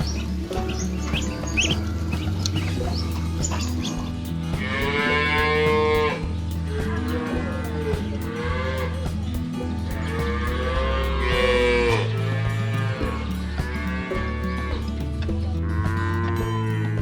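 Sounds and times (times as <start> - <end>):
background music: 0.0 - 17.0
cow mooing: 0.6 - 9.1, 9.9 - 14.9.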